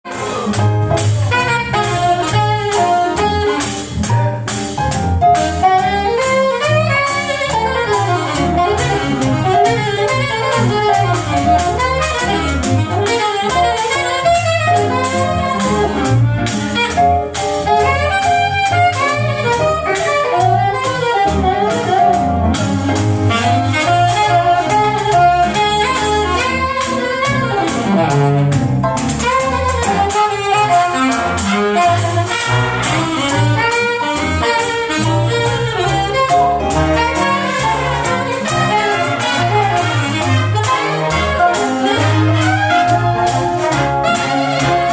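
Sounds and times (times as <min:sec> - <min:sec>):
saxophone melody: 0:00.1 - 0:44.9
walking bass: 0:00.1 - 0:44.9
washboard rhythm: 0:00.1 - 0:44.9.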